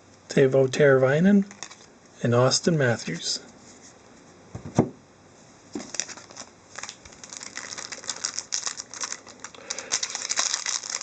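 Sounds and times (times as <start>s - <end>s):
trading cards and wrappers rustling: 1.4s - 1.9s, 5.8s - 11.0s.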